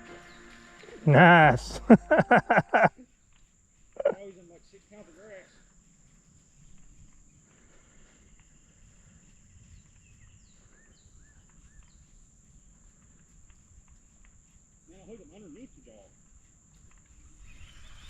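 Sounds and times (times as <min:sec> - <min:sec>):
high-pitched insect drone: 0:17.0 - 0:18.0
short bird chirps: 0:17.2 - 0:18.0.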